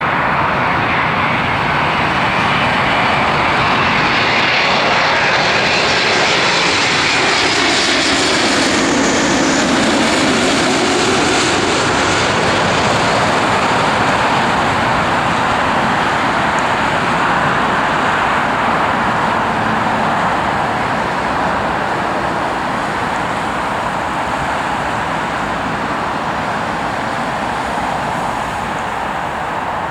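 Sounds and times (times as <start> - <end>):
jet engines passing close: 0.0 - 29.9.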